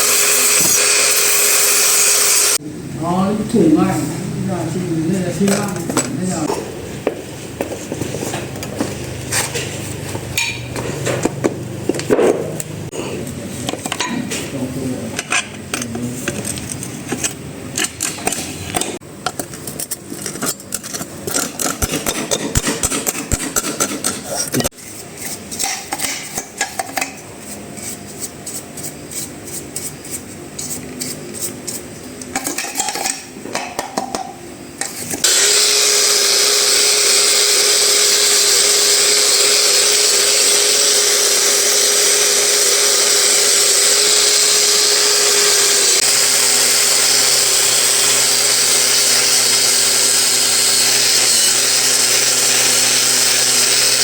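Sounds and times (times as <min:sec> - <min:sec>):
small electric power tool running: 0:00.0 - 0:02.6, 0:35.2 - 0:54.0.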